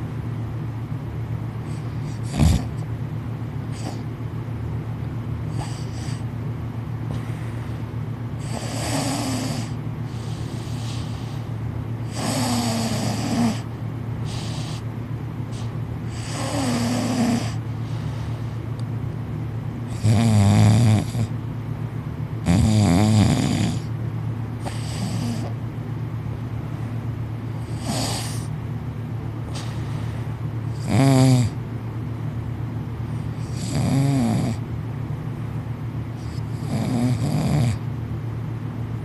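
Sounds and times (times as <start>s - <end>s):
steady low hum: 0.0s - 39.0s
loud rattling snoring: 1.7s - 2.8s, 3.7s - 4.0s, 5.5s - 6.2s, 8.4s - 11.2s, 12.0s - 14.8s, 16.1s - 17.6s, 19.9s - 21.3s, 22.4s - 23.9s, 24.6s - 25.5s, 27.6s - 28.5s, 30.7s - 31.6s, 33.3s - 34.6s, 36.2s - 37.8s.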